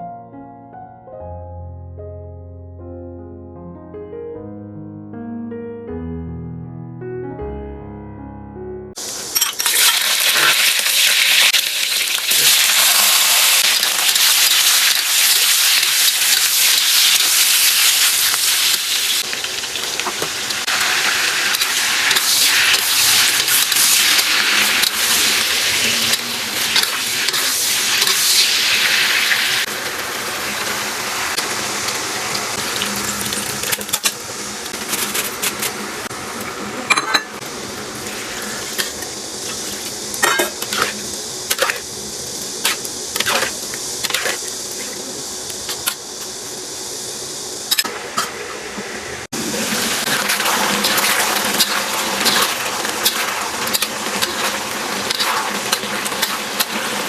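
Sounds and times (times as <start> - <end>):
steady hiss: 9.0 - 57.0
pots and dishes clinking: 9.3 - 10.7, 36.8 - 37.4, 38.3 - 41.8.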